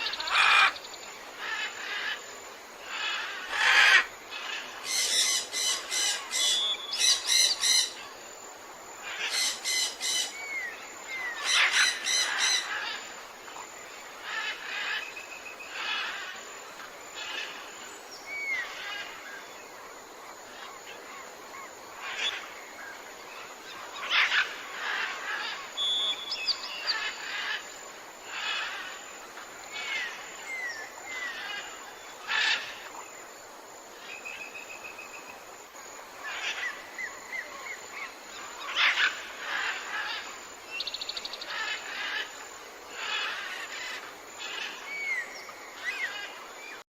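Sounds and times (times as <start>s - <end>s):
steady background hiss: 0.0s - 46.8s
birds calling: 2.9s - 8.2s, 9.0s - 13.0s.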